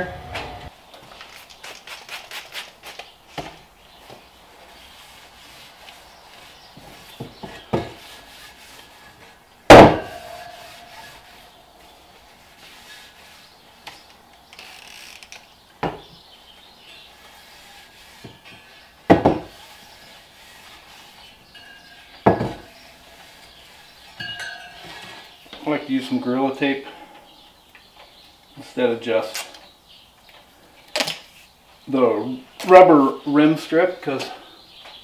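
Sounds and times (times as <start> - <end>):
sharp ringing metal clank: 9.8 - 11.2, 24.2 - 24.9
faint rubbing on wheel rim: 16.9 - 22.1.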